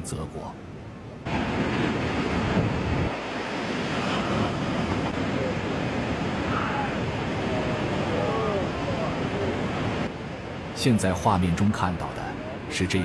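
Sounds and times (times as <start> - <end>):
waves crashing: 0.1 - 13.0
wind buffeting microphone: 0.8 - 10.8.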